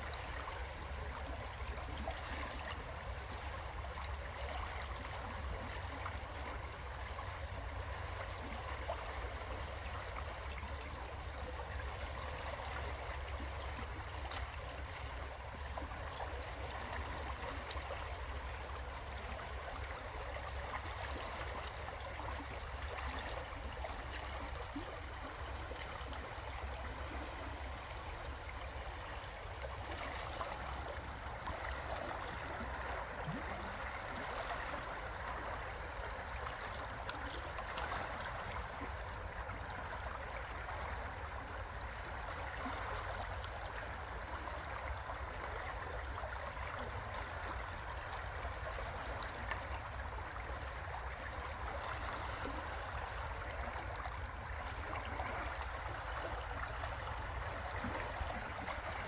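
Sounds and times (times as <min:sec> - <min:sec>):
constant low rumble: 0:00.0 - 0:59.0
river water flowing over rocks: 0:23.5 - 0:40.0.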